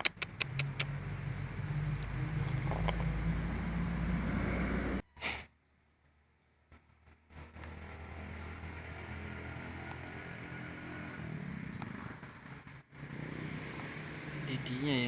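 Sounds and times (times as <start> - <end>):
sharp clicks: 0.0 - 1.0
engine running low rumble: 0.0 - 5.0, 7.0 - 15.0.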